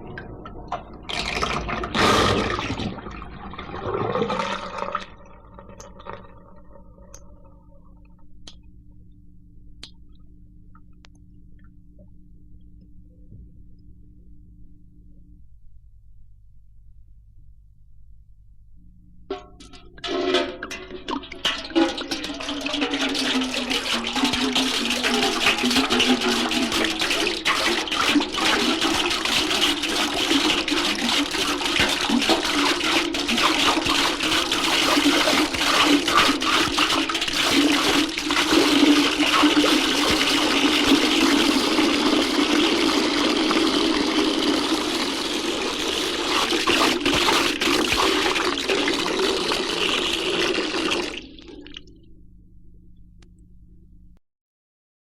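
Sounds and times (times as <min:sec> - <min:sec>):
water pouring into bucket: 0:00.0 - 0:07.6, 0:19.3 - 0:51.9
record surface noise hum: 0:00.0 - 0:54.2.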